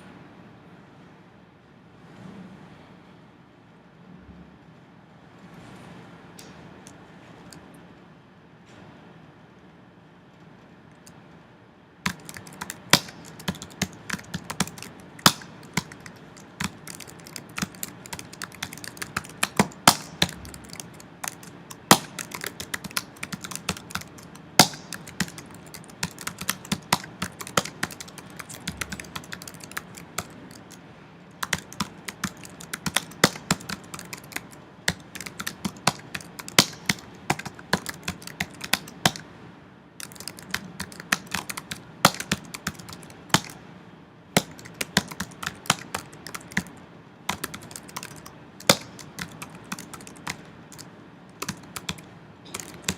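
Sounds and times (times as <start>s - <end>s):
typing on computer keyboard: 12.0s - 39.3s, 40.0s - 43.6s, 44.4s - 52.9s.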